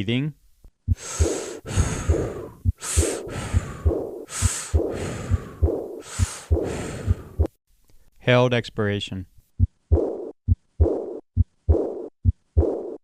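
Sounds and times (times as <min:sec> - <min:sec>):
heartbeat: 0:00.8 - 0:07.6, 0:09.6 - 0:13.0
breathing: 0:00.9 - 0:08.2.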